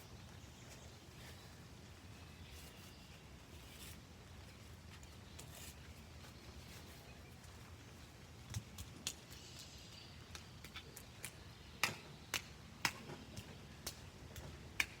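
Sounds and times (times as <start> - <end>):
raindrops tapping on umbrella: 8.4 - 15.0.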